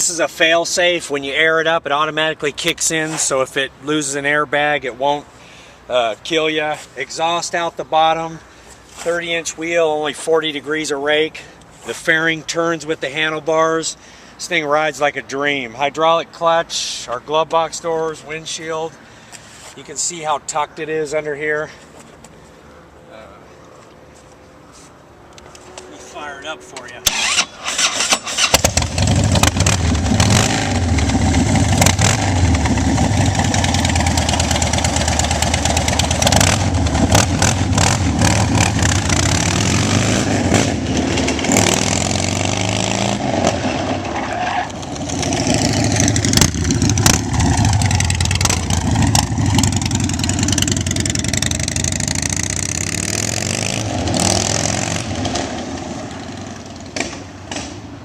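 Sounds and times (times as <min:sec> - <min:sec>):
motorcycle engine starting and revving: 0:26.9 - 0:58.0.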